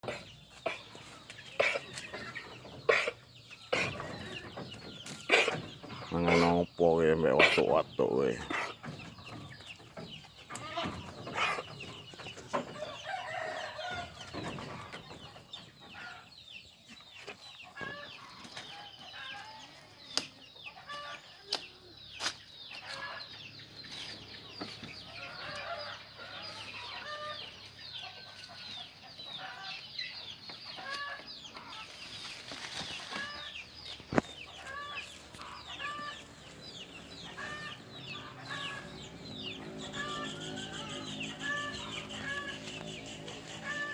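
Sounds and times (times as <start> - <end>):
chickens clucking: 0.0 - 43.9
high peeping calls: 22.1 - 43.9.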